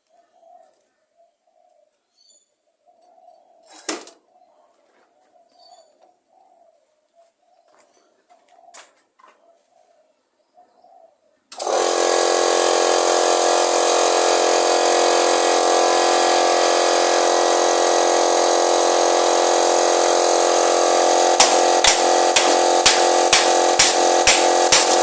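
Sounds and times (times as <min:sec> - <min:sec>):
power tool whining: 0:11.5 - 0:25.0
sharp knocks: 0:21.4 - 0:25.0.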